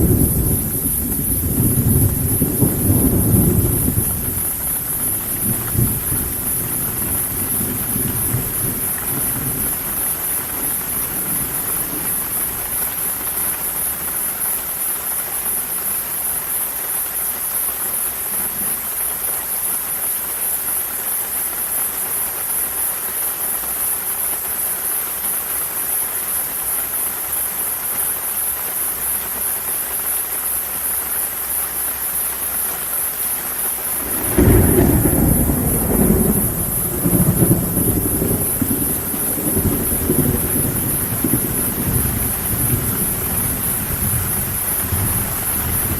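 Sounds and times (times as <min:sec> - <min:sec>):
low roll of thunder: 0:00.0 - 0:16.2, 0:33.5 - 0:45.9
steady rain falling: 0:00.0 - 0:45.9.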